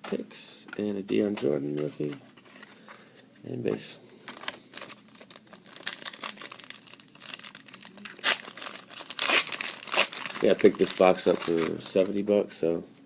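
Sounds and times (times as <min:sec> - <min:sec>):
plastic wrapper crinkling and tearing: 0:04.3 - 0:12.2.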